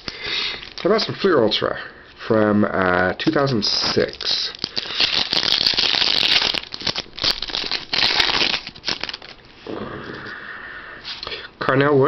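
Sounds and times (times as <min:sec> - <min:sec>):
wrapper crinkling and tearing: 0:00.0 - 0:01.1, 0:03.4 - 0:09.4.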